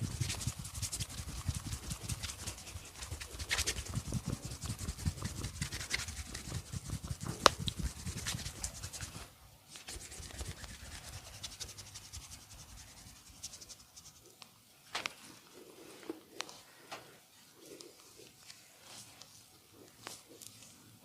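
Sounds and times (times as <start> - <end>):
hands rubbing and patting: 0.0 - 14.4.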